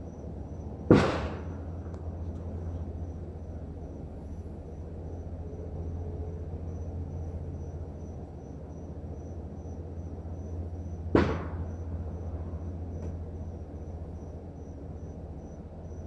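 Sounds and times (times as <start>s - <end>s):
sharp ringing bang: 0.9s - 1.7s.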